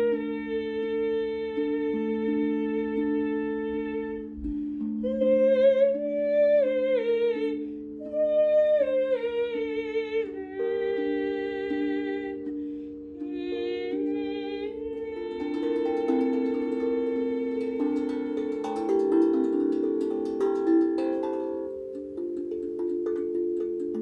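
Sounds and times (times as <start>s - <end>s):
wavering sliding melody: 10.4s - 24.0s
low held notes: 12.2s - 24.0s.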